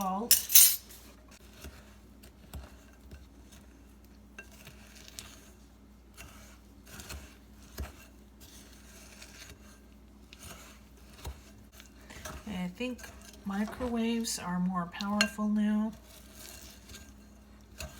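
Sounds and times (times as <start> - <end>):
metal spoon scraping glass bowl: 0.3 - 1.0.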